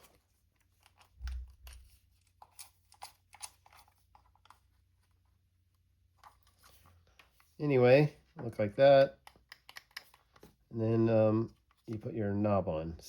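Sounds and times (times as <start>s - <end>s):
plastic parts clicking together: 9.2s - 10.5s.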